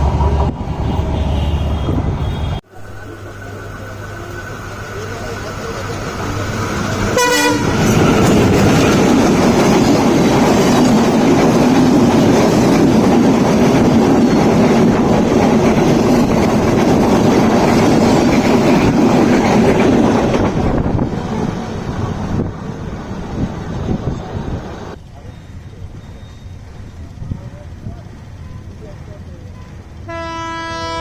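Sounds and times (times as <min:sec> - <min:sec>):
train passing at speed: 0:00.0 - 0:31.0
train horn blast: 0:07.1 - 0:08.0, 0:30.0 - 0:31.0.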